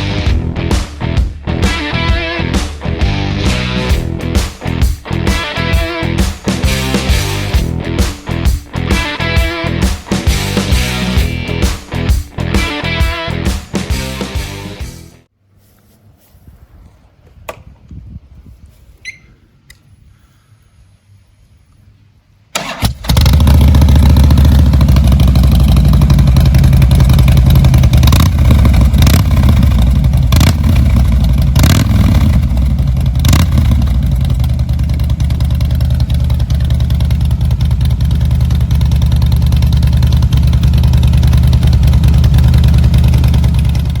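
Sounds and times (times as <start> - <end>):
motorcycle engine idling: 22.6 - 44.0.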